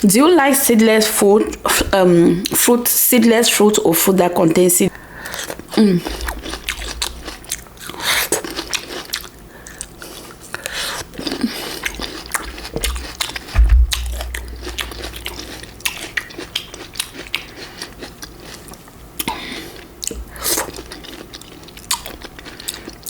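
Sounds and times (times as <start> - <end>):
biting and chewing fruit: 5.2 - 23.0
mouth clicks: 12.4 - 16.0
low thump: 12.5 - 15.8.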